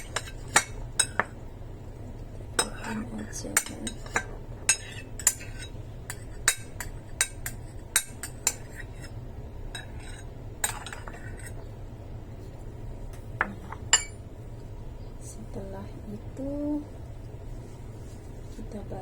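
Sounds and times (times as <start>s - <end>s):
tableware clinking: 0.0s - 1.3s, 3.6s - 9.1s, 9.7s - 11.6s, 13.4s - 14.2s.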